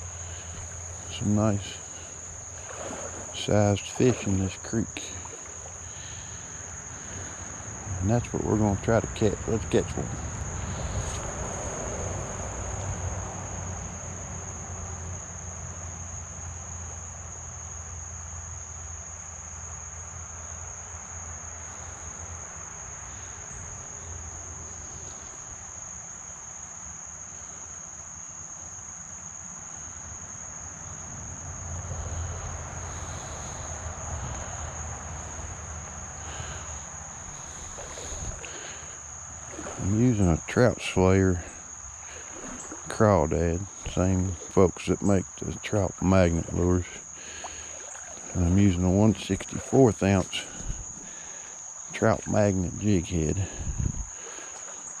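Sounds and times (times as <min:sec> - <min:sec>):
creek water flowing: 0:00.0 - 0:18.2, 0:30.9 - 0:55.0
crickets trilling: 0:00.0 - 0:55.0.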